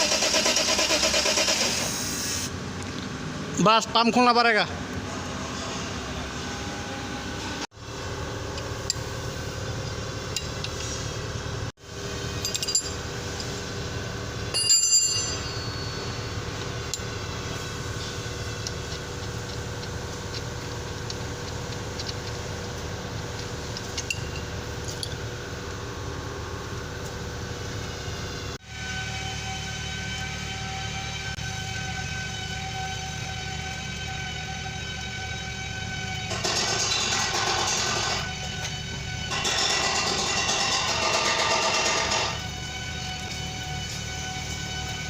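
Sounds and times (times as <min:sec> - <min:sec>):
mechanical hum: 0:02.0 - 0:45.0
tools clinking on metal: 0:12.4 - 0:13.5, 0:14.5 - 0:16.3.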